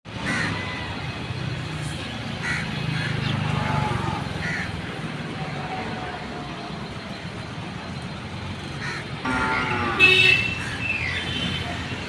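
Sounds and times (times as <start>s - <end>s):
birds cawing: 0.1s - 1.1s, 2.4s - 4.8s, 8.7s - 11.5s.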